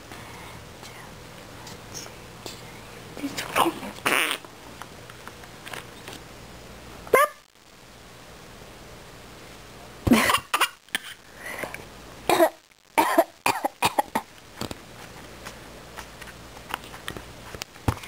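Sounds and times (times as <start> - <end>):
baby coughing: 10.1 - 10.8, 12.3 - 14.3.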